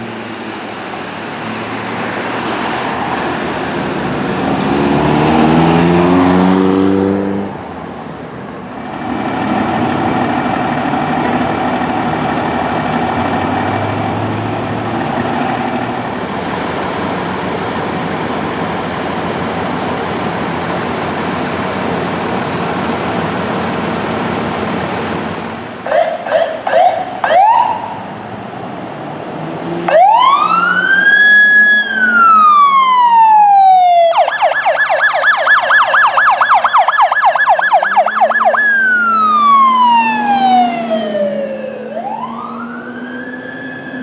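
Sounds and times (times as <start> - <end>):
vehicle and road noise: 0.0 - 44.0.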